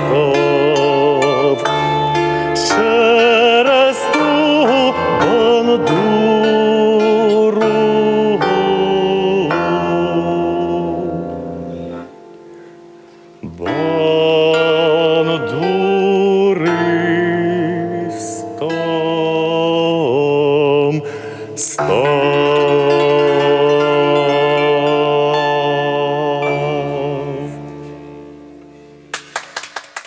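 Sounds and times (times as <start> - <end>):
bandura plucked chords: 0.0 - 29.1
person singing wavering melody: 0.0 - 29.1.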